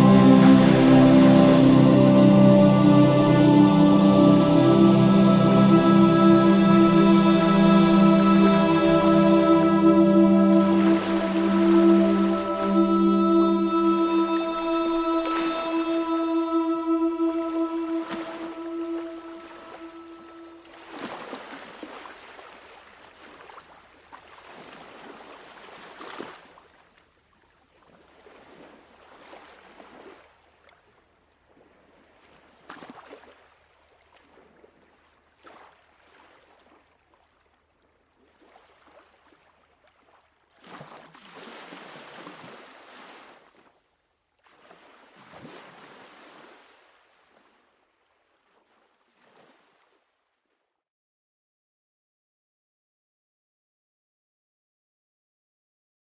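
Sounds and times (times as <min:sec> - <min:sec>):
ocean waves washing in: 0:00.0 - 0:21.6.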